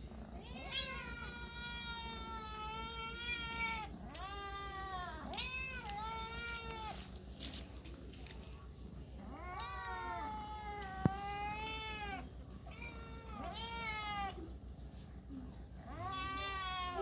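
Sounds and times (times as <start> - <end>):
cat meowing: 0.4 - 7.0, 9.3 - 14.5, 15.9 - 17.0.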